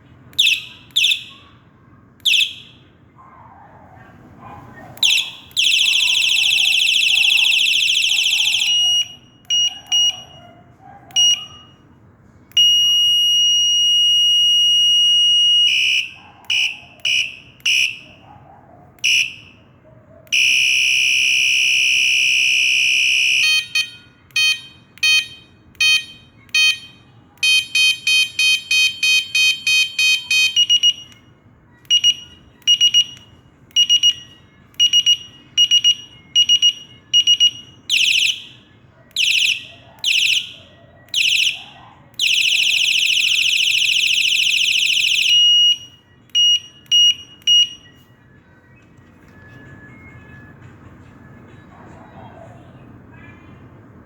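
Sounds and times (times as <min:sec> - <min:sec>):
electronic bicycle horn beeping: 0:12.5 - 0:18.1, 0:20.3 - 0:31.2.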